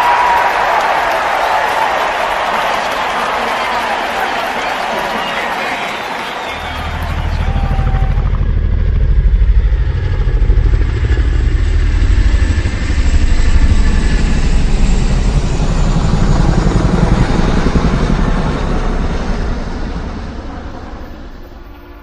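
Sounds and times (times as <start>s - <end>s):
vehicle engine pulsing: 6.6s - 13.8s.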